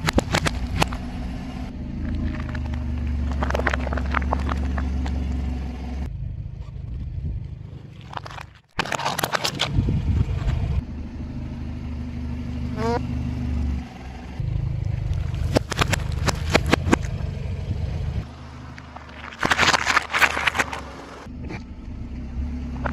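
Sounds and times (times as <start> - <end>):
tyres crunching objects: 0.0 - 6.1, 7.4 - 10.8, 14.9 - 17.4, 18.2 - 21.3
car engine running: 0.0 - 22.9.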